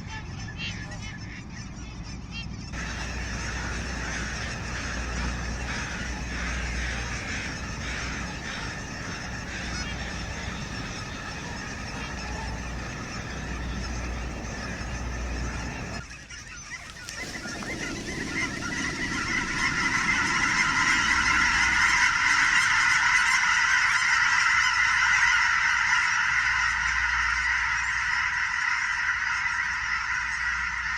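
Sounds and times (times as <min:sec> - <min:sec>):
flock of birds calling: 0:02.8 - 0:16.1, 0:16.8 - 0:24.4.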